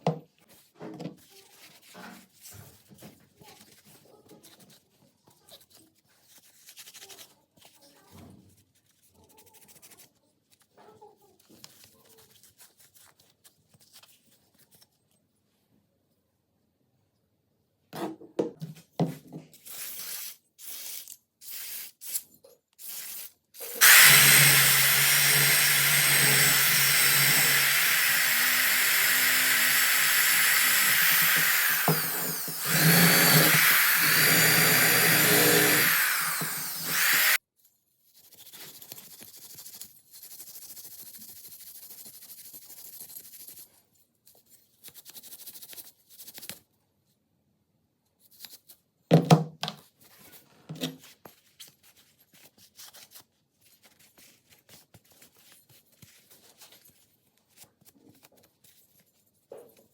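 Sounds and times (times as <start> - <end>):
power tool working on metal: 23.8 - 37.4.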